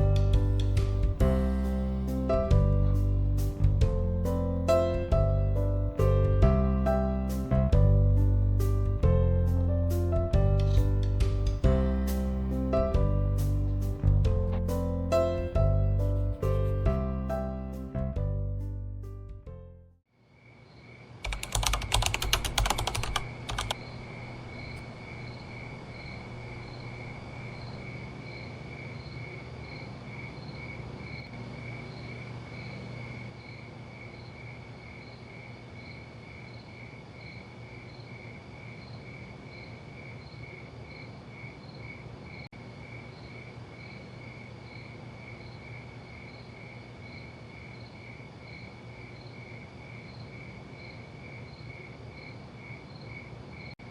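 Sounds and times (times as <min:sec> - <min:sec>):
cricket chirping: 0:20.2 - 0:22.0, 0:22.8 - 0:53.9
low background hum: 0:20.6 - 0:53.9
dense crackling clicking noise: 0:21.3 - 0:23.8.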